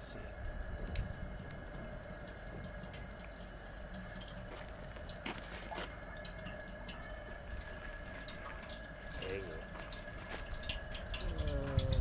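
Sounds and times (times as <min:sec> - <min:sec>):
gas burner flame rush: 0:00.0 - 0:12.0.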